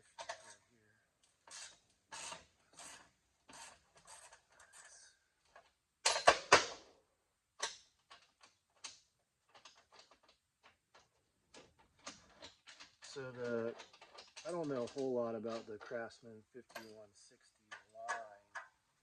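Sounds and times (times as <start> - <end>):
hand wrench strokes: 1.4 - 4.9.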